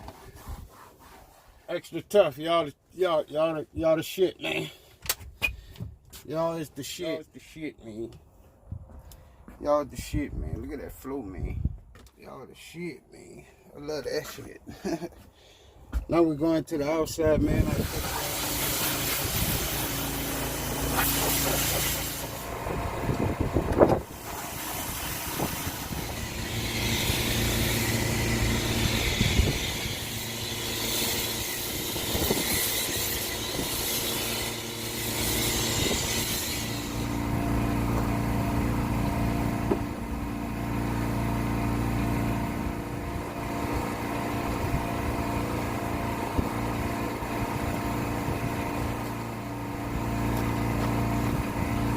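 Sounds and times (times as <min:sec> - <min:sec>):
pressure washer motor hum: 0:17.3 - 0:51.9
water spraying hiss: 0:17.8 - 0:22.5, 0:24.1 - 0:28.0.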